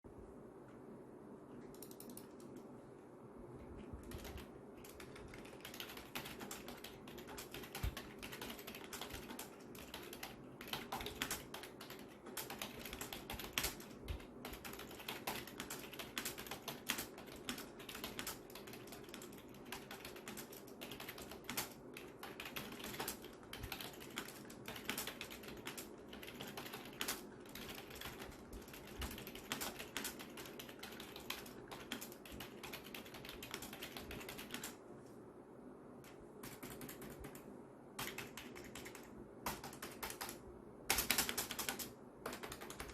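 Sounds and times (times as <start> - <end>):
typing on keyboard: 1.6 - 2.7, 4.0 - 34.8, 36.4 - 42.9.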